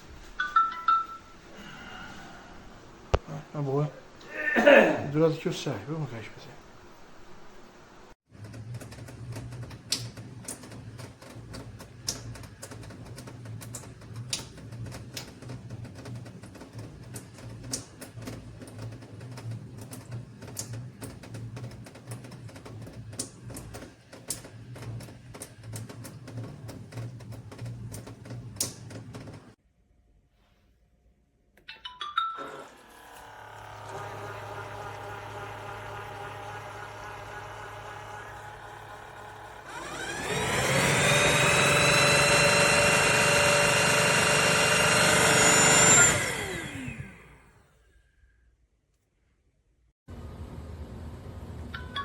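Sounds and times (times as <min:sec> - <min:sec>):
motor whir: 0:32.4 - 0:47.6
vacuum cleaner running: 0:32.4 - 0:47.6.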